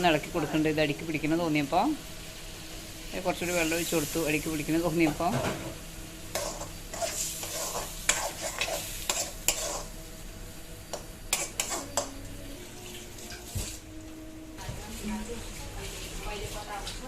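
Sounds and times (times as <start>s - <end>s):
curry sizzling: 0.0s - 17.0s
spoon scraping a pot: 6.3s - 10.0s, 10.9s - 12.2s.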